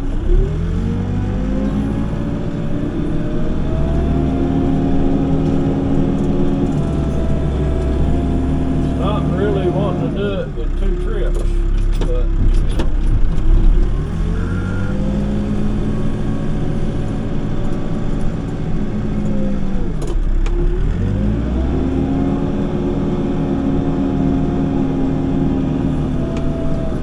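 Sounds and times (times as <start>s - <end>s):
diesel engine revving: 0.0s - 27.0s.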